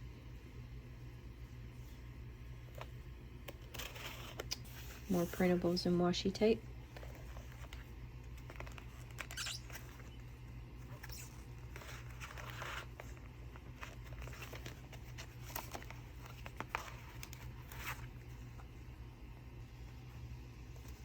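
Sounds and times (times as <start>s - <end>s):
steady low hum: 0.0s - 21.0s
paper rustling: 6.9s - 10.2s, 10.8s - 18.7s.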